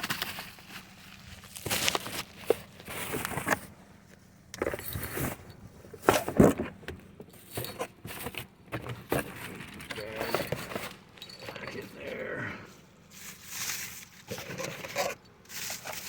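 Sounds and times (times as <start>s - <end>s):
rustling clicks and knocks: 0.0s - 12.0s.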